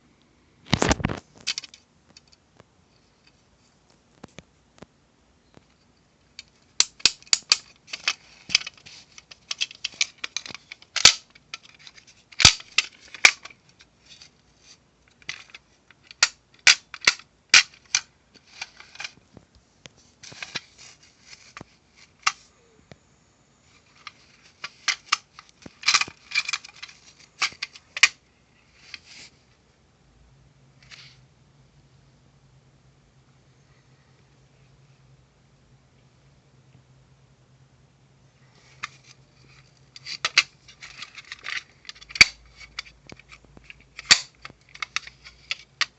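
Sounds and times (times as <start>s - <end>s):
hard objects clicking and clacking: 6.4s - 13.9s.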